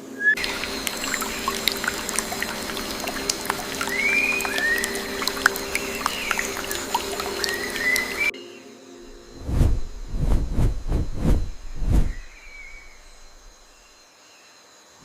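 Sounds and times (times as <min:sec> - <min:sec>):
birds whistling: 0:00.3 - 0:08.3, 0:12.1 - 0:13.9
small clicks and drips: 0:00.4 - 0:08.3
water trickling: 0:00.4 - 0:08.3, 0:11.4 - 0:13.9.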